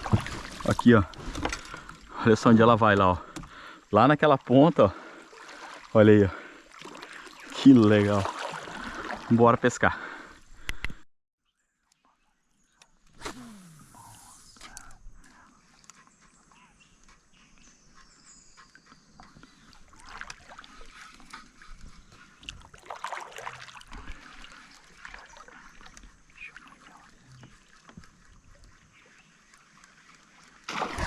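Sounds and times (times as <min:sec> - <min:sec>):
paddle strokes in water: 0:00.0 - 0:02.6, 0:05.0 - 0:09.4, 0:15.3 - 0:31.0.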